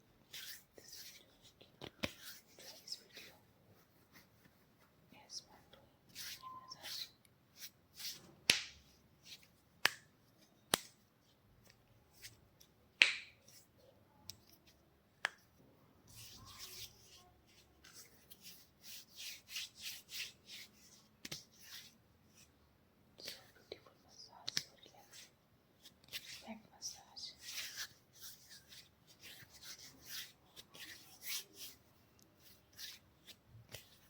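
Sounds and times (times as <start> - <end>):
hands rubbing hair and skin: 0.2 - 5.1, 6.1 - 11.0, 17.8 - 22.5, 24.4 - 34.0
sharp hand snaps: 8.5 - 8.8, 9.8 - 10.1, 10.7 - 11.0, 13.0 - 13.4.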